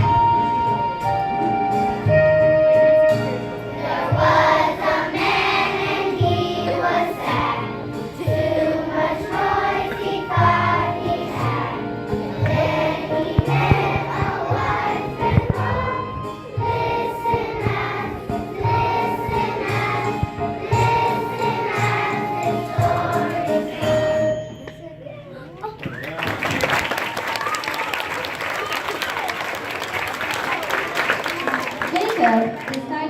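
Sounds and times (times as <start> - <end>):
instrumental accompaniment with bass: 0.0 - 25.2
children singing in chorus: 3.8 - 24.2.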